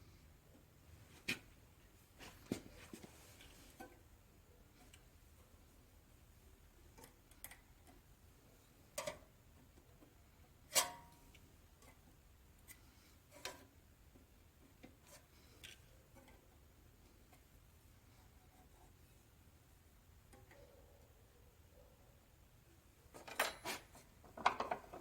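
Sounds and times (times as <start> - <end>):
sharp clicks and knocks: 24.2 - 25.0.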